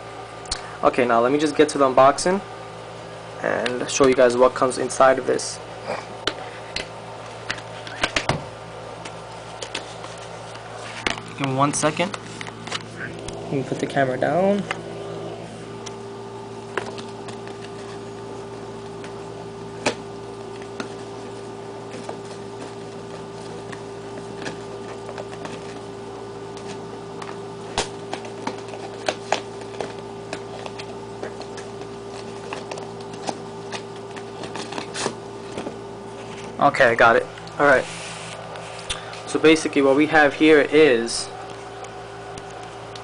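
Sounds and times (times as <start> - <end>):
steady electrical hum: 0.0 - 43.0.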